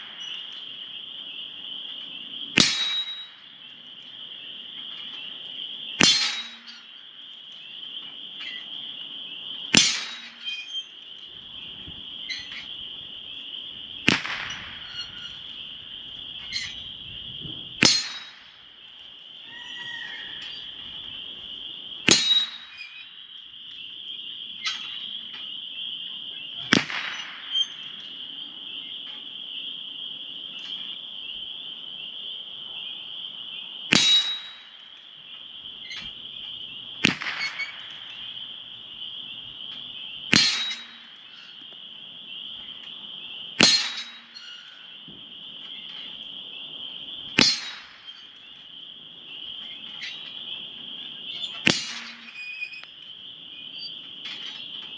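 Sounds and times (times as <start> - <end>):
high insect drone: 0.0 - 54.9
bullet hitting steel target: 2.6 - 3.4, 6.0 - 7.0, 9.7 - 10.7, 14.1 - 15.3, 17.8 - 18.5, 22.1 - 23.1, 26.7 - 27.9, 33.9 - 34.8, 37.0 - 38.4, 40.3 - 41.2, 43.6 - 44.8, 47.4 - 48.3, 51.6 - 52.4
rifle gunshots: 14.1 - 14.7, 26.7 - 27.4, 37.0 - 38.3.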